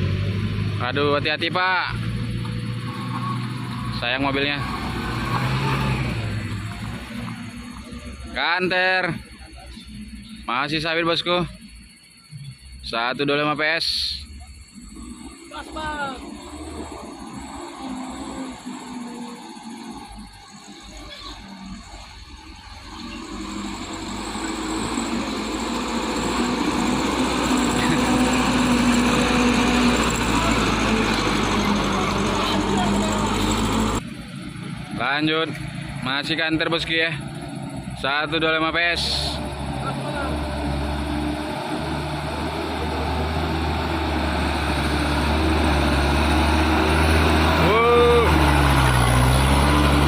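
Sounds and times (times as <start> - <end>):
truck diesel engine under load: 0.0 - 50.0.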